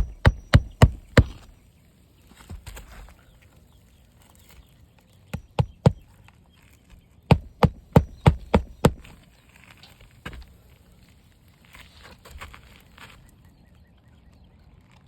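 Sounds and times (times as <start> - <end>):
hammer striking nails: 0.0 - 1.5, 5.4 - 6.0, 7.3 - 9.1.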